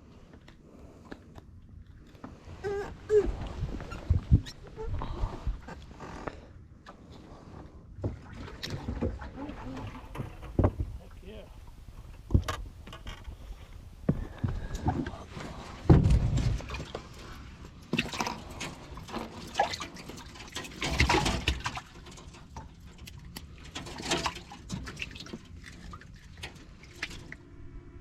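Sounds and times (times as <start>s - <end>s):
knocks and clatter in boat: 2.2s - 27.3s
heavy thump: 15.8s - 16.5s
water splashing and dripping: 16.0s - 27.4s.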